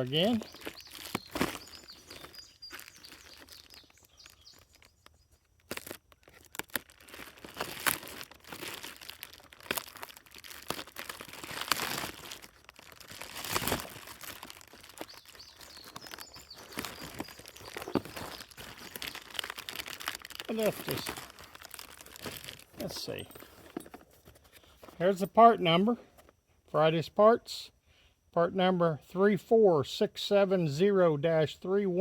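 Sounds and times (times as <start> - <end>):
cardboard box torn open: 5.6 - 15.1, 15.8 - 22.8.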